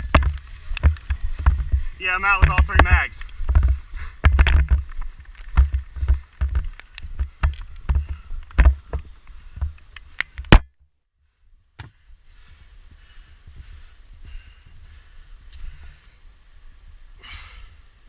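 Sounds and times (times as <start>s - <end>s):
footsteps walking: 0.0s - 10.5s
faint hiss: 12.1s - 18.0s.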